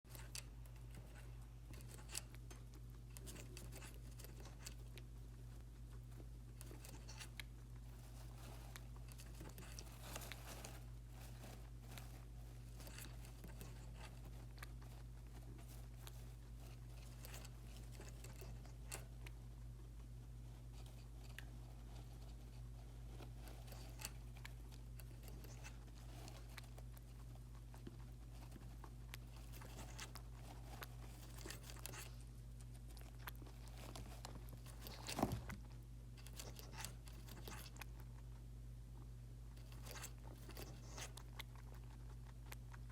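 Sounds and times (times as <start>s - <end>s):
steady low hum: 0.0s - 42.9s
guinea pig drinking clicks: 39.5s - 42.9s.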